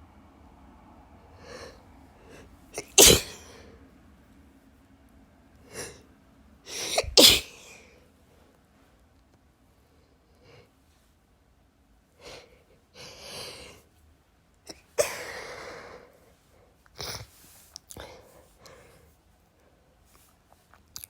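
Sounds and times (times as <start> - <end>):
person sneezing: 2.8 - 3.6, 6.7 - 7.9, 14.7 - 15.6.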